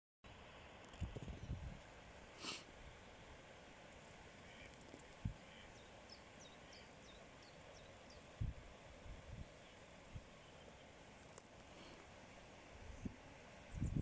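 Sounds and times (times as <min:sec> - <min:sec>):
faint steady hiss: 0:00.3 - 0:14.0
bird chirping: 0:05.4 - 0:08.3.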